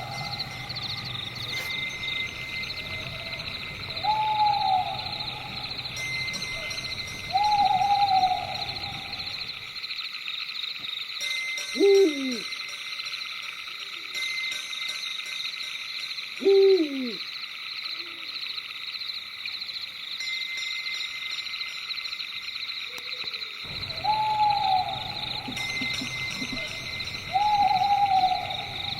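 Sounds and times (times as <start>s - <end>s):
pulsing high chirring: 0.0s - 9.8s, 23.7s - 28.9s
owl hooting: 2.7s - 9.5s, 11.8s - 12.5s, 16.4s - 17.2s, 23.7s - 28.9s.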